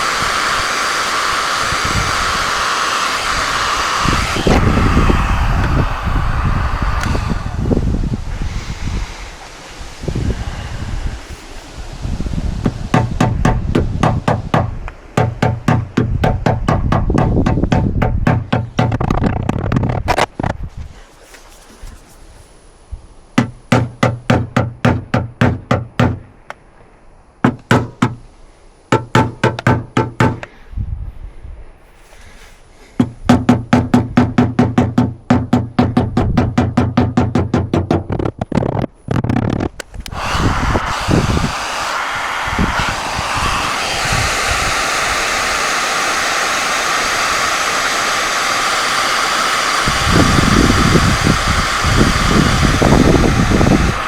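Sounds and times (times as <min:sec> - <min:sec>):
fan-like rushing with whine: 0:00.0 - 0:23.2, 0:38.9 - 0:54.0
hammer tapping metal panel: 0:13.0 - 0:19.6, 0:33.0 - 0:38.6.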